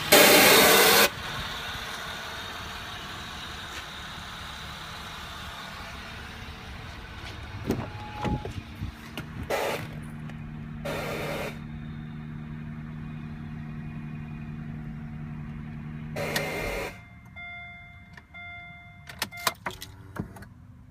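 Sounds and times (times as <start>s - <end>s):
engine hissing: 0.0s - 17.2s
car engine idling: 0.0s - 20.9s
car chime beeping: 7.7s - 8.6s, 16.2s - 19.8s.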